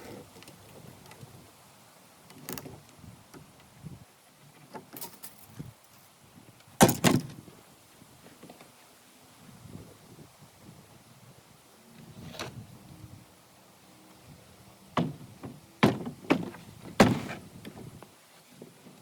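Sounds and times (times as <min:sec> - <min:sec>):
knocks and clunks: 0:15.0 - 0:17.9.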